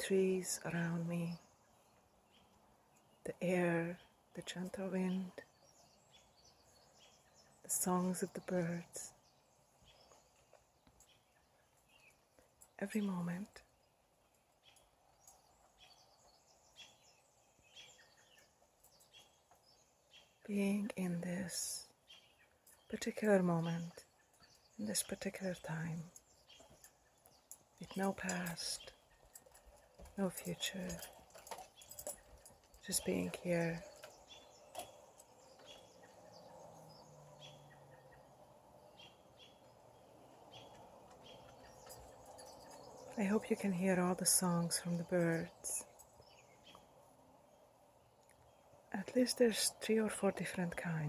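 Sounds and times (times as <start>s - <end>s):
birds chirping: 0.0s - 51.0s
distant road traffic hum: 30.0s - 51.0s.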